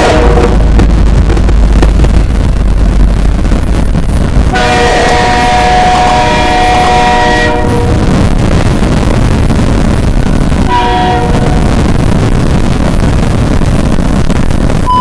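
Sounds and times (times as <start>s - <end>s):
multi-tone train horn blast: 0.0s - 0.8s, 4.4s - 8.7s, 10.6s - 12.0s
passing train rumbling: 0.0s - 15.0s.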